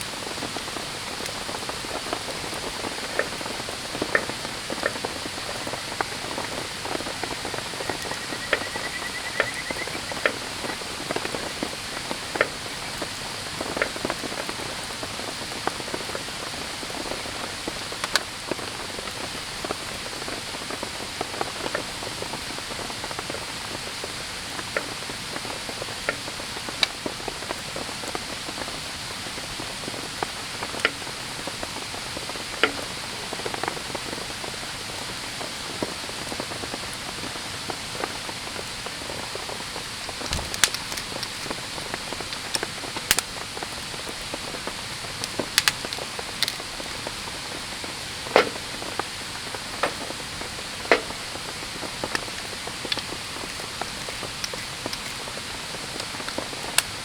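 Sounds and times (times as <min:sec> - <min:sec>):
campfire hiss: 0:00.0 - 0:57.0
campfire pops and snaps: 0:00.4 - 0:14.6, 0:17.4 - 0:18.7, 0:39.1 - 0:47.6, 0:48.2 - 0:57.0.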